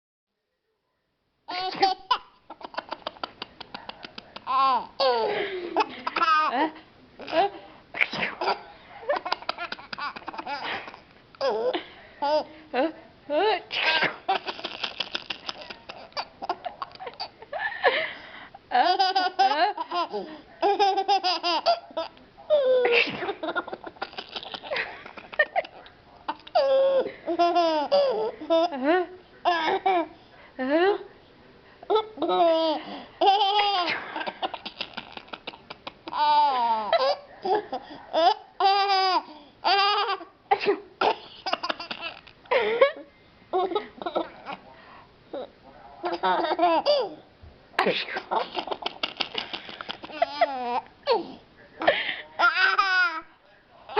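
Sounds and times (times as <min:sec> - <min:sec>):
baby laughing: 0:01.5 - 0:06.6, 0:08.4 - 0:12.5, 0:13.9 - 0:17.3, 0:18.8 - 0:28.7, 0:31.9 - 0:40.2, 0:41.0 - 0:42.7, 0:46.1 - 0:47.2, 0:48.1 - 0:51.4, 0:52.4 - 0:53.2
fake sneezes: 0:08.0 - 0:08.6, 0:13.7 - 0:14.3.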